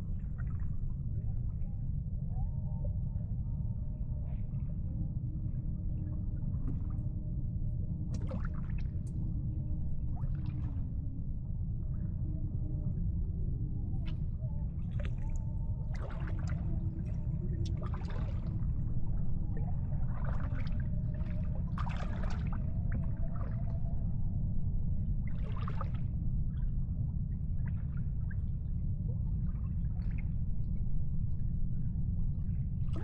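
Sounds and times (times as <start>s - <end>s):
low rumble: 3.0s - 33.0s
water splashing and lapping: 14.9s - 16.6s, 17.7s - 18.6s, 20.1s - 23.6s.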